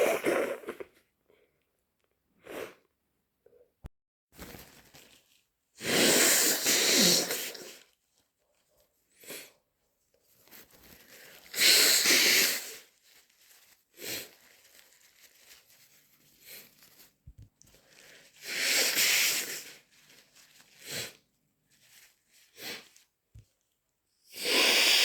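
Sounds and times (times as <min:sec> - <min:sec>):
person blowing nose loudly: 0:00.0 - 0:01.0, 0:05.8 - 0:07.8, 0:11.5 - 0:12.9, 0:18.4 - 0:19.8, 0:24.3 - 0:25.0.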